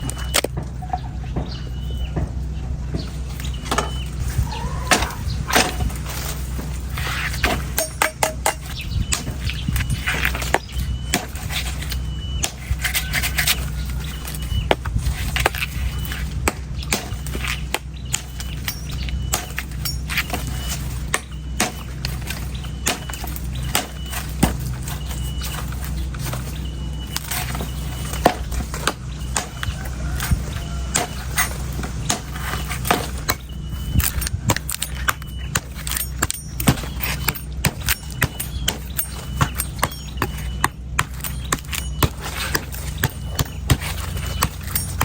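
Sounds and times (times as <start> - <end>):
blade squeaks: 0.0 - 2.2, 3.0 - 45.0
steady low hum: 0.0 - 45.0
knife chopping coconut: 19.3 - 25.9, 27.1 - 45.0.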